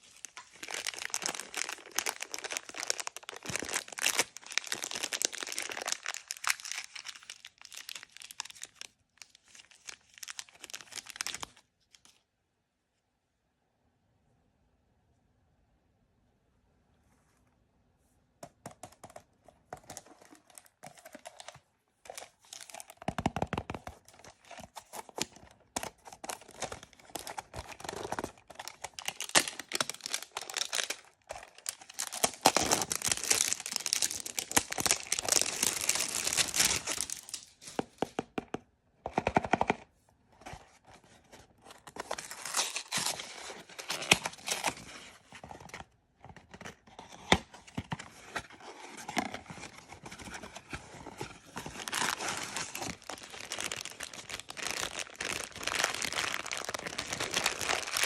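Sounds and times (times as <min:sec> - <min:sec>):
packaging being torn and crinkled: 0:00.0 - 0:12.0, 0:22.1 - 0:23.0, 0:24.1 - 0:37.6, 0:41.8 - 0:45.1, 0:51.6 - 0:58.0.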